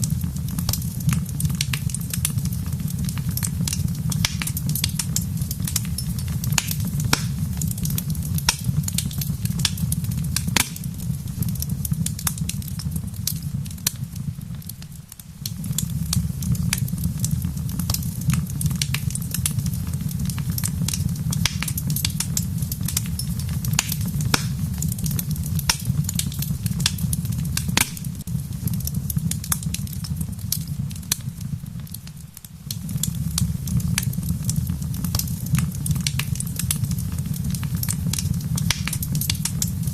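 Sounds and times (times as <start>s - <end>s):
rain falling: 0.0s - 39.9s
wood fire crackling: 0.0s - 39.9s.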